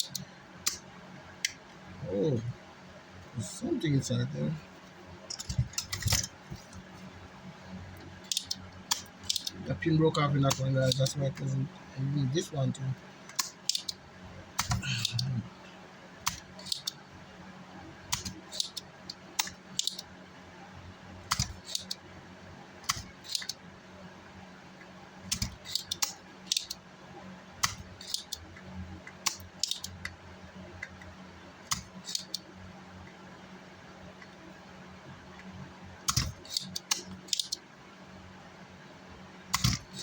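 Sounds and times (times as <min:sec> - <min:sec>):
faint steady hum: 0:00.0 - 0:40.0
small metal tools clicking and snipping: 0:08.3 - 0:09.6, 0:13.4 - 0:14.0, 0:16.3 - 0:16.9, 0:18.2 - 0:18.8, 0:19.4 - 0:20.0, 0:21.3 - 0:22.0, 0:22.9 - 0:23.6, 0:25.3 - 0:26.8, 0:27.6 - 0:28.4, 0:29.3 - 0:30.0, 0:31.7 - 0:32.4, 0:36.1 - 0:37.6.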